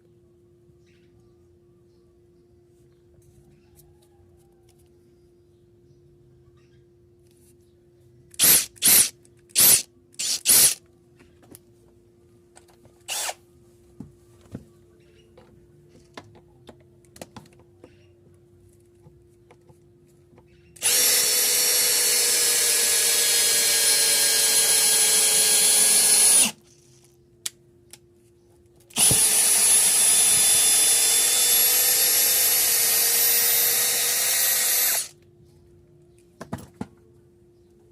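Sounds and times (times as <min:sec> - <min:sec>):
cordless drill motor whining: 0:08.4 - 0:10.8, 0:13.1 - 0:13.4, 0:20.8 - 0:26.6, 0:28.9 - 0:35.1.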